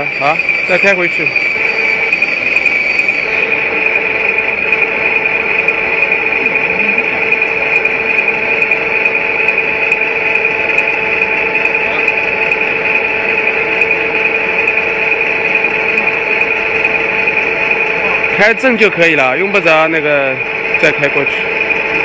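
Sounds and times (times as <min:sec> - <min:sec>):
turret drive whining and grinding: 0:00.0 - 0:22.0.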